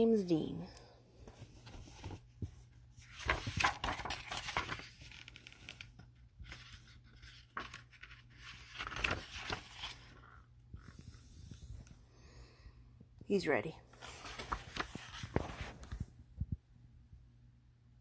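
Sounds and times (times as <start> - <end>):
paper pages turning: 1.2 - 12.0, 13.9 - 16.1.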